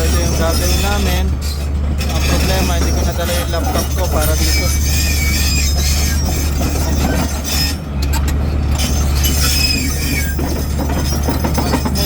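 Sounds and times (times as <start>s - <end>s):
diesel engine running loudly: 0.0s - 12.0s
wavering high squeal: 3.8s - 7.8s, 8.8s - 12.0s.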